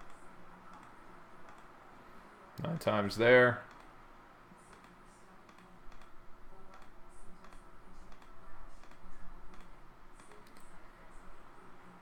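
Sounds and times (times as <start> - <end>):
computer mouse clicking: 0.0 - 1.7, 3.7 - 3.9, 4.7 - 10.8.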